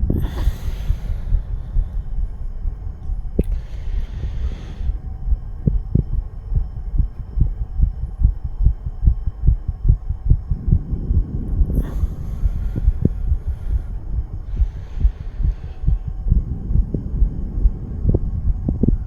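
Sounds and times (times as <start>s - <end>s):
heartbeat thumps: 0.0s - 19.0s.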